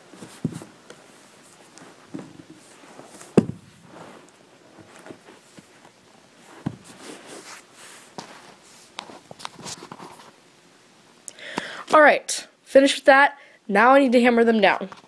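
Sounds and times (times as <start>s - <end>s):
rustling: 0.0s - 10.4s.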